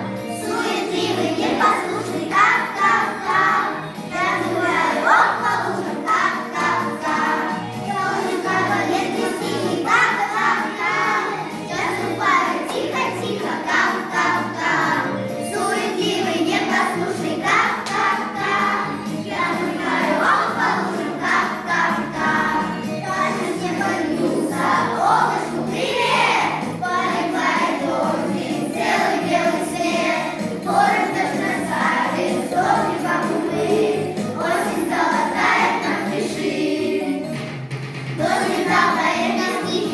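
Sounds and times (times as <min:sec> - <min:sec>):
group of voices singing: 0:00.0 - 0:37.6, 0:38.2 - 0:39.9
musical accompaniment: 0:00.0 - 0:39.9.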